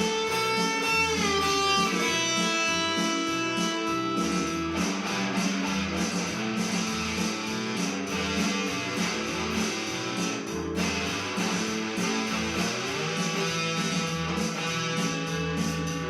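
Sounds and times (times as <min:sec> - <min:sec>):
blues guitar with string bends: 0:00.0 - 0:16.0
pulsing bass line: 0:00.0 - 0:16.0.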